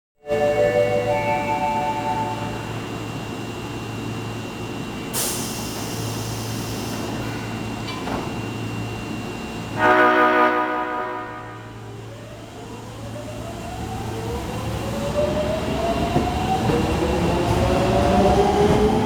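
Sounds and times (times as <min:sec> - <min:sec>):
train running: 0:00.3 - 0:19.0
train horn chord: 0:09.8 - 0:11.8.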